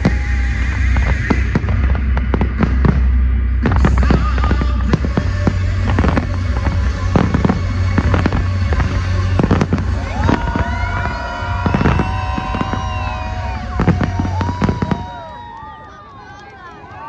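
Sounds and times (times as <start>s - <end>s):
fireworks bangs and crackling: 0.0s - 15.9s
firework whistles: 3.8s - 15.6s.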